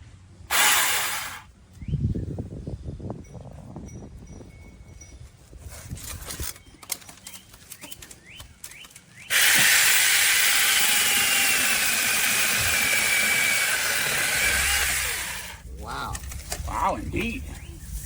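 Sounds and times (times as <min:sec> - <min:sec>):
electric chainsaw cutting wood: 0:00.5 - 0:01.5, 0:09.3 - 0:15.6
handling clicks and rustling: 0:05.6 - 0:09.3, 0:15.9 - 0:18.0.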